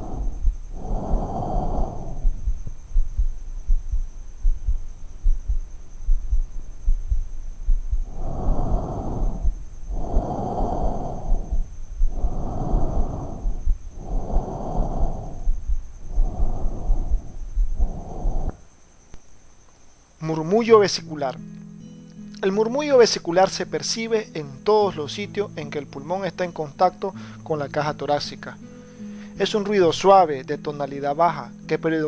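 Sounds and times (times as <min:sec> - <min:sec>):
hollow hissing breath sounds: 0:00.0 - 0:19.1, 0:27.1 - 0:27.5, 0:28.6 - 0:29.6
low regular thumps: 0:00.0 - 0:19.4.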